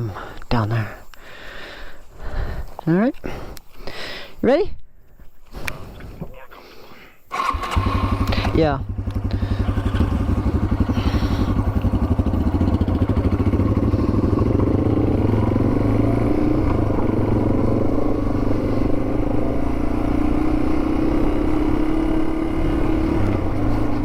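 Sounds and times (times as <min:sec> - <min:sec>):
motorcycle engine running: 0:07.4 - 0:24.0.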